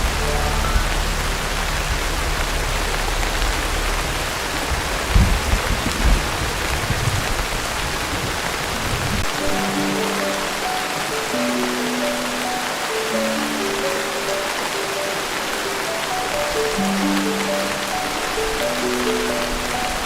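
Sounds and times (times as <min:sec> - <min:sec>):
heavy rain on a tin roof: 0:00.0 - 0:20.0.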